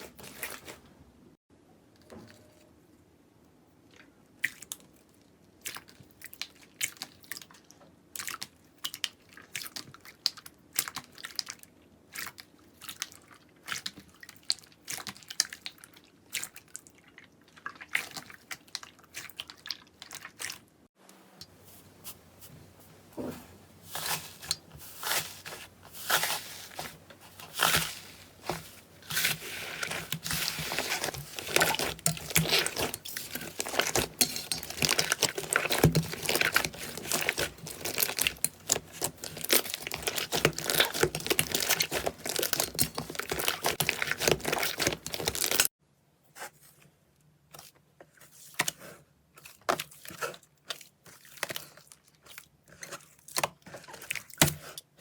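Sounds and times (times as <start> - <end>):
slime squelching and popping: 24.0 - 45.7.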